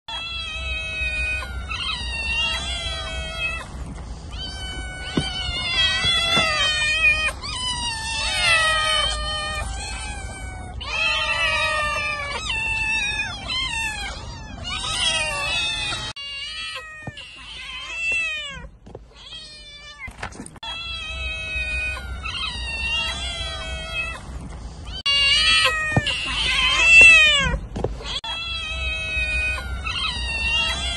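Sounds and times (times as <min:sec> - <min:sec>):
cat meowing: 0:00.1 - 0:24.3, 0:24.9 - 0:30.9.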